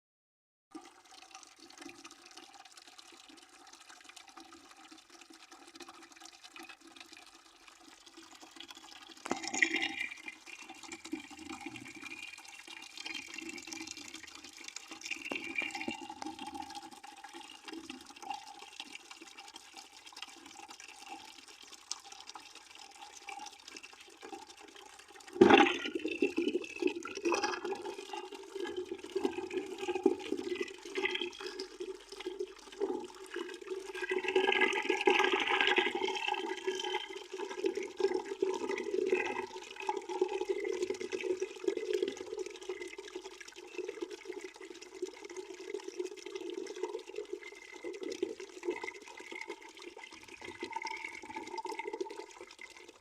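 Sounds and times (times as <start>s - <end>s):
water pouring into a bucket: 0.7s - 53.0s.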